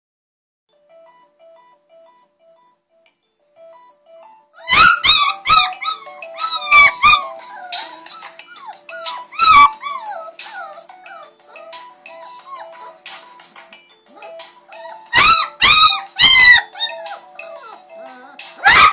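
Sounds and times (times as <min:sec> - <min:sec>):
alarm clock beeping melody: 0:00.7 - 0:18.9
puppy whining and yelping: 0:04.6 - 0:13.1, 0:14.1 - 0:18.9.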